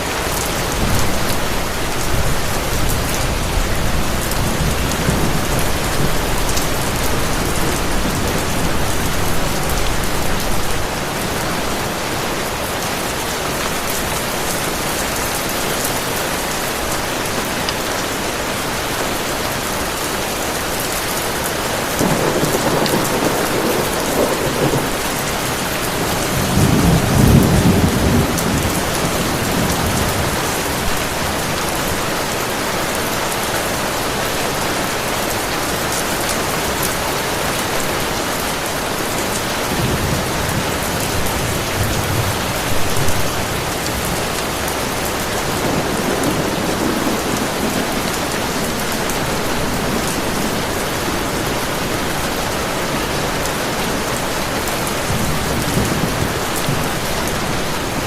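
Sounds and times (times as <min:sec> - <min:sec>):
heavy rain pouring: 0:00.0 - 0:58.0
thunder rumbling: 0:00.5 - 0:13.2, 0:21.8 - 0:31.6, 0:39.6 - 0:58.0.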